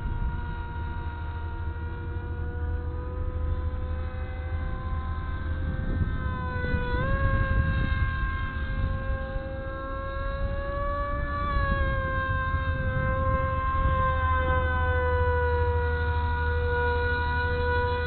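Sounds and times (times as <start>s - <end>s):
electric motor and propeller whine: 0.0s - 18.0s
wind rumbling on microphone: 0.0s - 18.0s.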